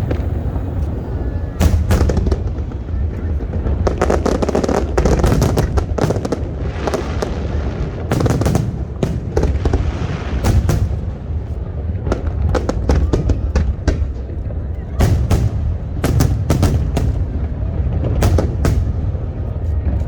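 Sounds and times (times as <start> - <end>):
fireworks bangs: 0.0 - 20.0.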